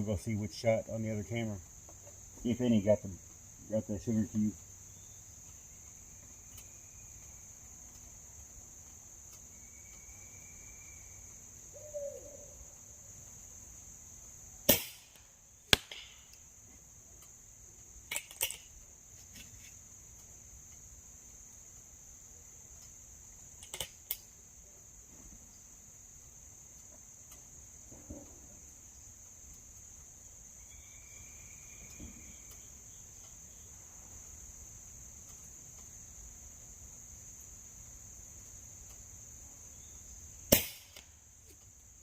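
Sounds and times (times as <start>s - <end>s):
crickets chirping: 0.0s - 42.0s
air rifle shot: 14.7s - 16.2s, 40.5s - 41.1s
sharp metallic clicks: 14.7s - 16.5s, 18.0s - 18.9s, 22.8s - 24.4s.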